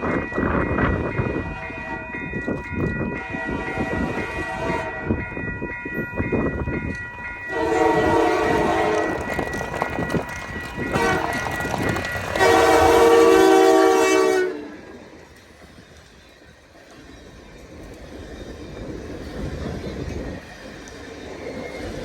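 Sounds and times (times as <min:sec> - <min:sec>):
train wheels clattering on rails: 0:00.0 - 0:22.0
diesel locomotive horn blast: 0:03.2 - 0:05.2, 0:07.5 - 0:09.2, 0:10.9 - 0:11.6, 0:12.3 - 0:14.9.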